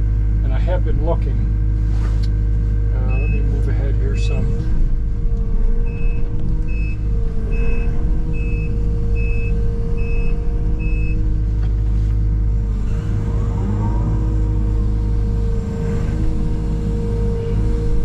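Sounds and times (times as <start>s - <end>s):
work machine engine running: 2.4s - 18.0s
backup alarm beeping: 3.1s - 3.5s, 5.8s - 11.3s.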